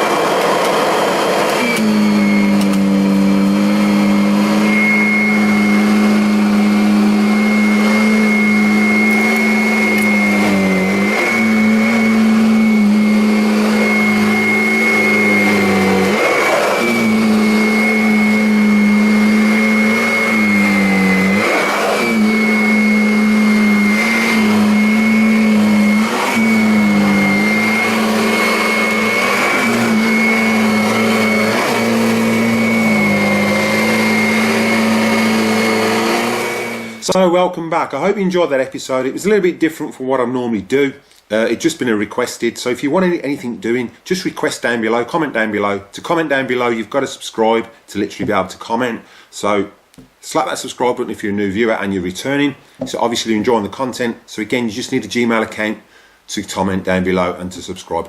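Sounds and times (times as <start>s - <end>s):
vacuum cleaner on carpet: 0.0s - 37.2s.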